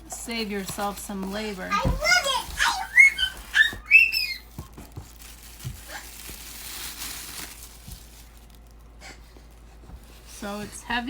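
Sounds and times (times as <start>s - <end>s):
soft crinkling and rustling: 0.0s - 11.0s.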